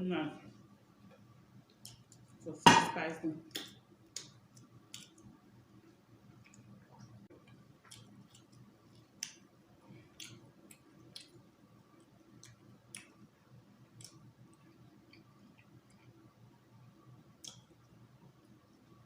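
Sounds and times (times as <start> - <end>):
low steady room hum: 0.0 - 19.0
mouth clicks and smacks: 1.7 - 2.4, 3.5 - 5.3, 7.8 - 13.2, 13.9 - 16.1, 17.4 - 17.8.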